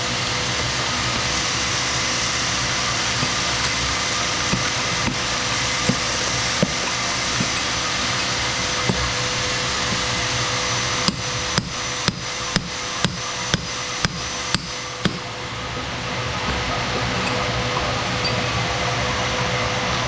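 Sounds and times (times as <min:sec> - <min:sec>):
machinery hum: 0:00.0 - 0:20.0
hammer strikes: 0:04.5 - 0:10.3, 0:11.0 - 0:15.9.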